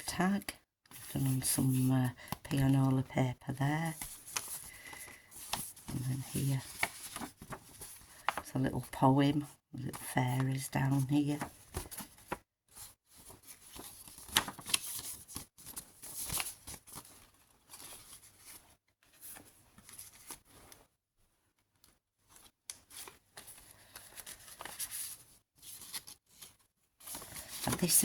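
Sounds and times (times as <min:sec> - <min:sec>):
paper rustling and crinkling: 0:03.8 - 0:08.9, 0:09.9 - 0:20.8, 0:22.3 - 0:28.0.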